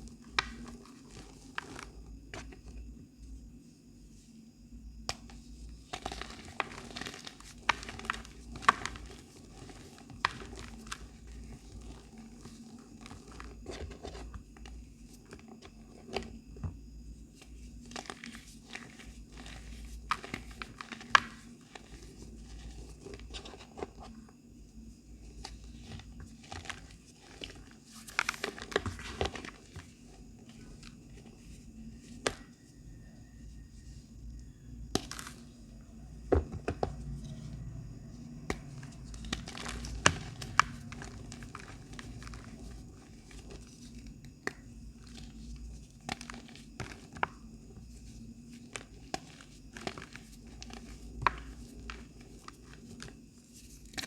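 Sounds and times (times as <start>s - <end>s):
chalk being crushed and crumbled: 5.9s - 14.2s, 34.9s - 35.6s, 38.5s - 47.4s.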